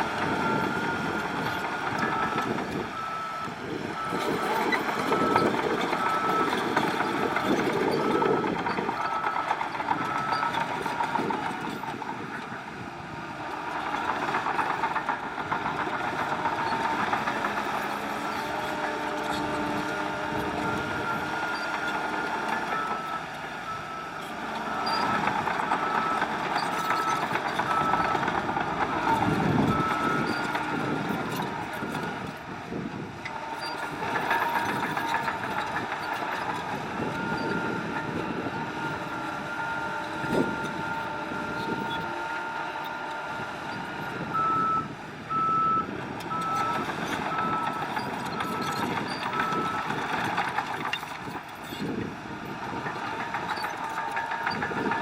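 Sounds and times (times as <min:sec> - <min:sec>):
diesel engines running under load: 0:00.0 - 0:55.0
reversing alarm beeping: 0:00.2 - 0:11.8, 0:19.5 - 0:31.0, 0:37.0 - 0:37.9, 0:43.7 - 0:50.4.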